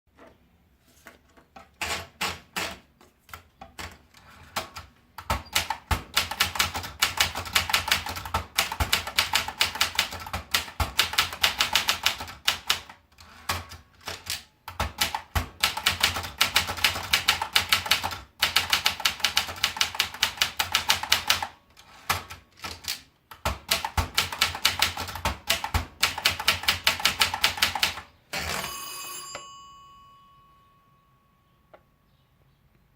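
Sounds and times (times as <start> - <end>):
typewriter typing: 1.7 - 28.7
typewriter carriage bell: 27.0 - 31.0.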